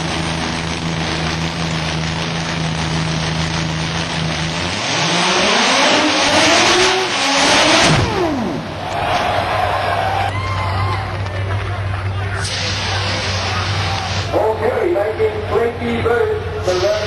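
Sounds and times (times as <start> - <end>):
car engine revving: 0.0 - 9.9.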